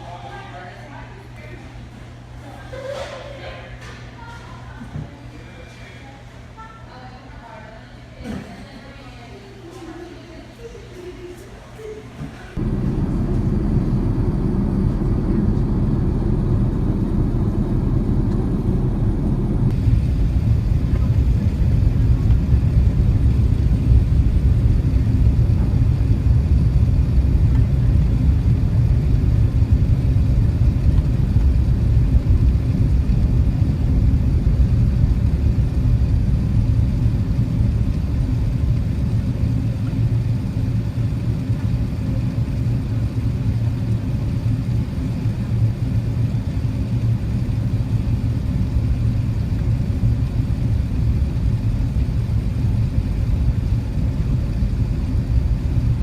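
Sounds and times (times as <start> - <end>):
aircraft cabin rumble: 12.2 - 56.0.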